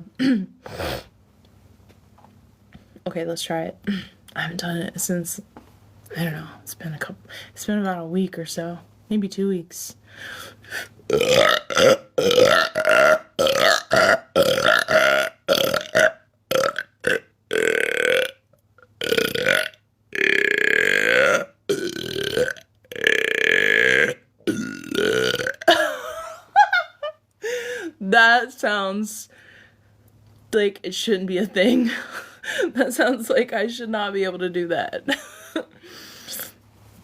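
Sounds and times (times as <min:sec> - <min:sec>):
woman burping: 0:00.0 - 0:00.6, 0:11.1 - 0:18.4, 0:19.0 - 0:26.3.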